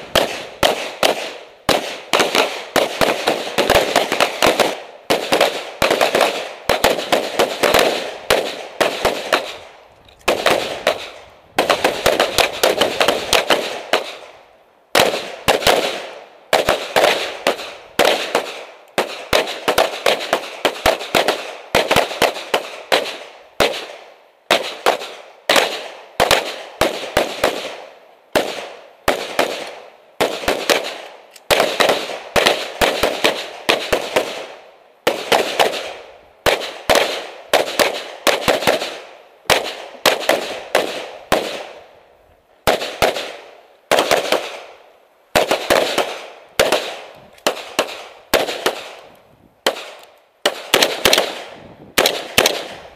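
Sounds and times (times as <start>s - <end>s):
rapid gunshots with echo: 0.0s - 9.7s, 10.3s - 14.3s, 14.9s - 41.8s, 42.6s - 44.8s, 45.4s - 49.0s, 49.6s - 52.9s.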